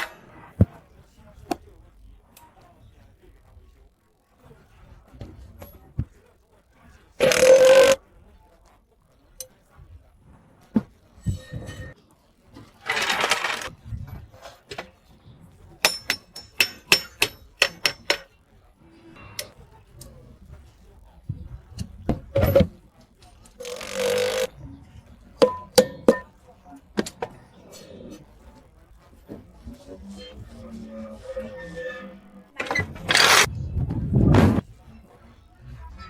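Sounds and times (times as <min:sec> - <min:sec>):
metal tools clinking and knocking: 0:12.8 - 0:15.0, 0:15.8 - 0:18.3.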